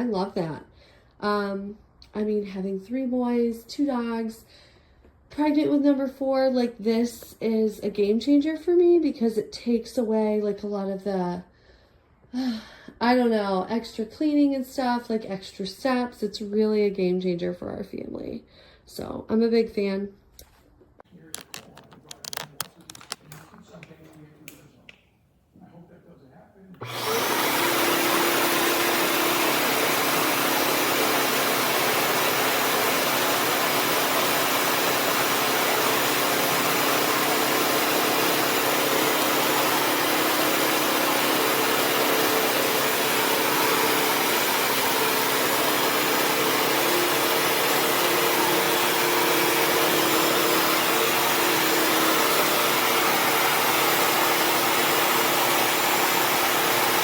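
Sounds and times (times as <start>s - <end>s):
vacuum cleaner running: 26.8s - 57.0s.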